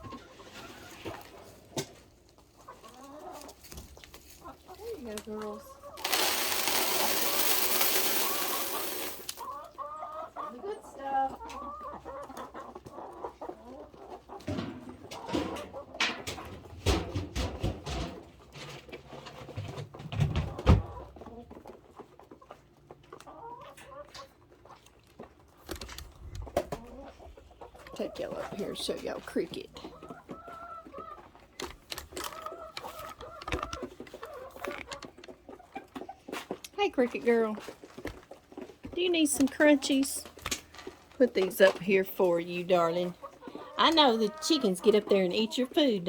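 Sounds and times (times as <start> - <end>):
chickens clucking softly: 0.0 - 6.0, 9.4 - 16.8, 18.2 - 25.6, 26.2 - 36.8, 42.9 - 45.9
hens calling: 5.5 - 14.4, 41.4 - 46.0.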